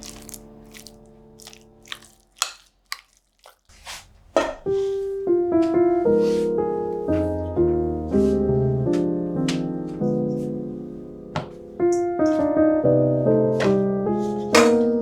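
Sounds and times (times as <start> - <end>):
solo piano music: 0.0 - 1.9, 4.6 - 15.0
crunching tortilla chips: 0.0 - 4.1.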